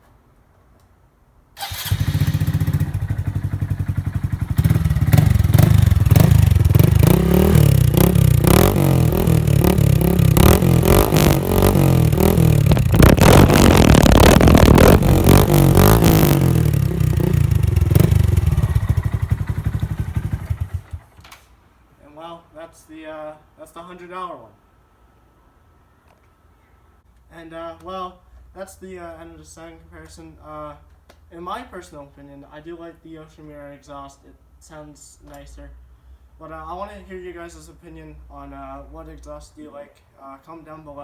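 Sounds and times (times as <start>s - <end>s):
motorcycle engine revving: 1.6s - 21.1s.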